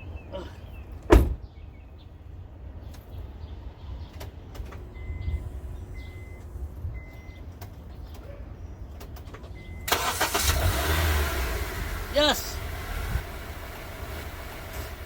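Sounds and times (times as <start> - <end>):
car warning chime beeping: 4.9 - 7.5, 9.6 - 10.4.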